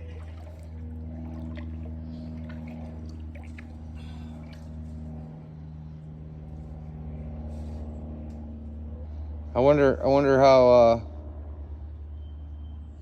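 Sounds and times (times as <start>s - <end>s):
drips: 0.0s - 5.2s
low machine hum: 0.0s - 13.0s.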